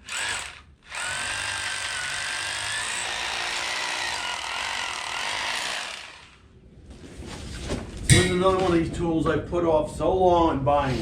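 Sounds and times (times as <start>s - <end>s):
hammer drill drilling: 0.0s - 6.4s.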